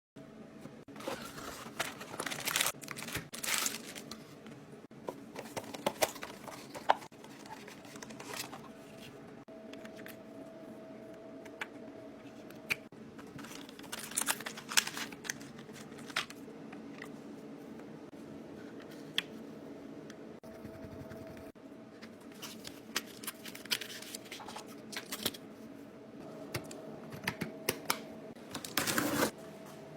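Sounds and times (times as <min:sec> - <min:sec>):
packaging crinkling and rustling: 0:00.9 - 0:04.4, 0:13.2 - 0:16.4.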